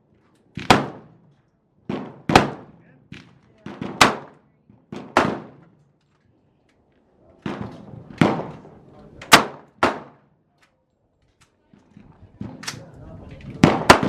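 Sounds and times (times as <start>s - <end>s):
gunshots echoing: 0.6s - 1.2s, 1.9s - 5.7s, 7.4s - 10.2s, 13.6s - 14.0s.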